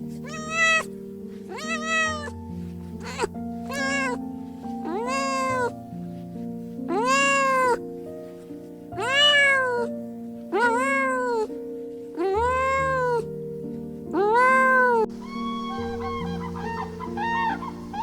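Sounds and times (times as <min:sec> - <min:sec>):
background music: 0:00.0 - 0:18.0
cat meowing: 0:00.2 - 0:00.9, 0:01.5 - 0:04.2, 0:04.8 - 0:05.8, 0:06.9 - 0:07.8, 0:09.0 - 0:09.9, 0:10.5 - 0:11.5, 0:12.2 - 0:13.3, 0:14.1 - 0:18.0.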